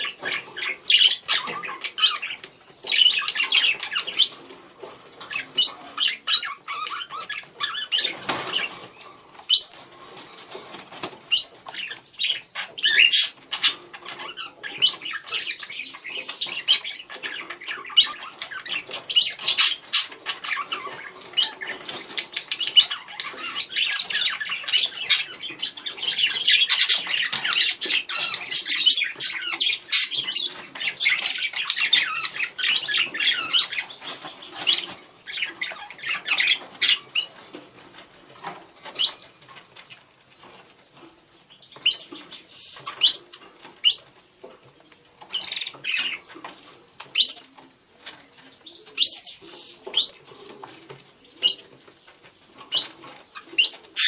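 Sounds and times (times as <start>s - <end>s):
budgerigar chatter: 0.0s - 4.5s.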